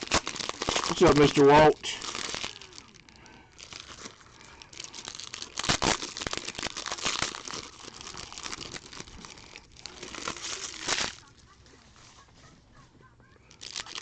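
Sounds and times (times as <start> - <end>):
card pack wrappers tearing and crinkling: 0.0 - 11.5, 13.5 - 14.0.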